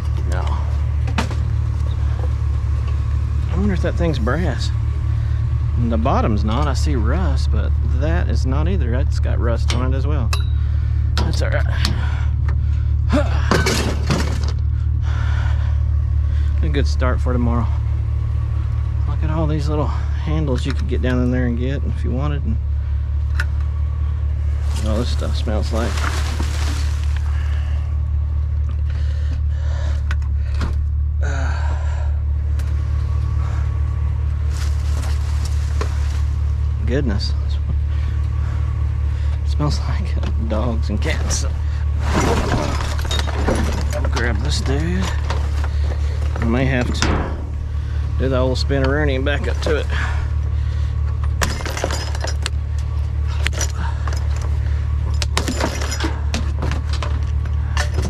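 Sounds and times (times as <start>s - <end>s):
junk clicking and rattling: 0.0s - 58.0s
vehicle engine idling: 0.0s - 58.0s
loose things rattling: 13.2s - 14.7s, 24.6s - 27.8s, 40.2s - 50.0s, 51.0s - 58.0s.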